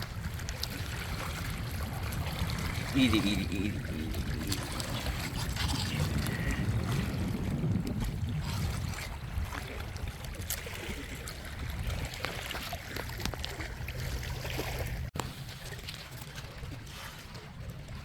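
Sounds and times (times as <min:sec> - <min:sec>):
steady low rumble: 0:00.0 - 0:10.1
water splashing and lapping: 0:00.0 - 0:18.0.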